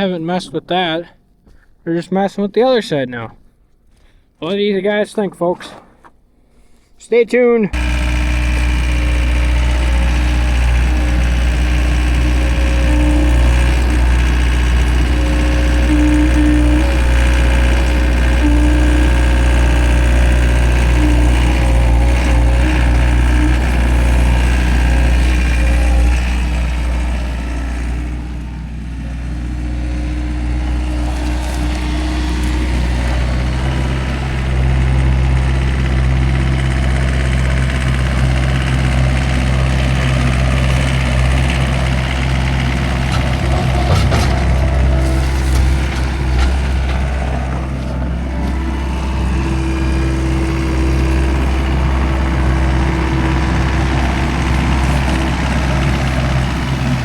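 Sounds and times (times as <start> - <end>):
farm machine engine running: 7.8 - 57.0.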